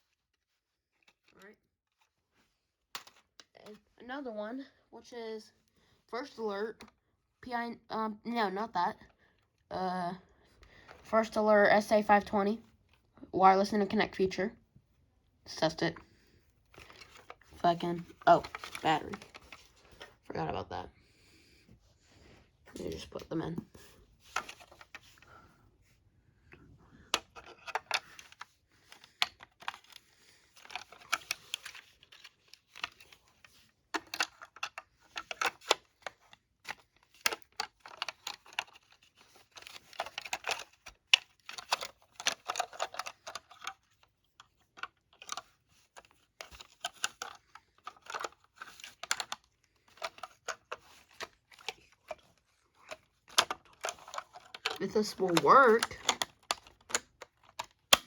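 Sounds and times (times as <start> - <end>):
plastic clicks and rattles: 2.9 - 3.8, 16.7 - 20.2, 22.8 - 25.4, 27.1 - 58.0.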